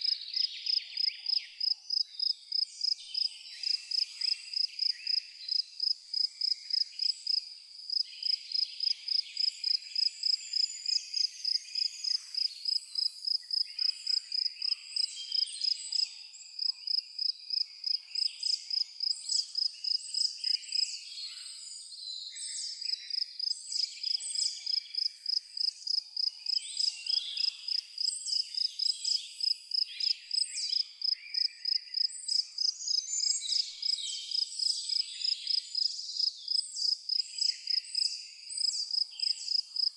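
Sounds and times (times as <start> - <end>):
cricket chirping: 0.0 - 20.8, 22.8 - 39.9
birds singing: 26.4 - 39.9.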